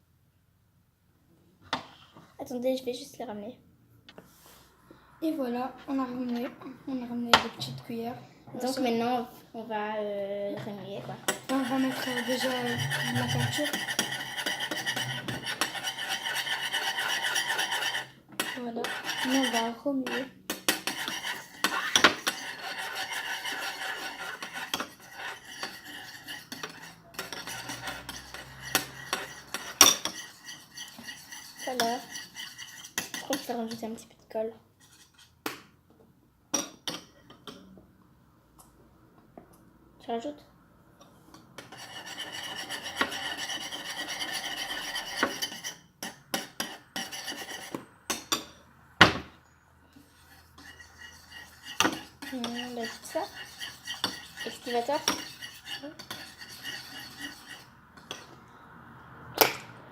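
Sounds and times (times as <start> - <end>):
spoons scraping bowls: 10.7 - 34.0, 34.8 - 35.4, 41.3 - 48.6, 50.0 - 58.4.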